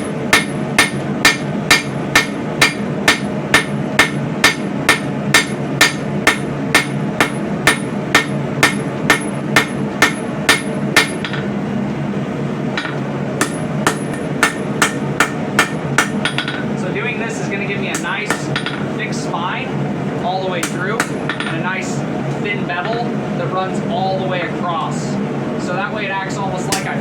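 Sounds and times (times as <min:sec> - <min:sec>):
hammer striking steel on anvil: 0:00.0 - 0:11.5, 0:12.8 - 0:16.7, 0:18.0 - 0:18.9, 0:20.6 - 0:21.6, 0:26.7 - 0:27.0
low background rumble: 0:00.0 - 0:27.0.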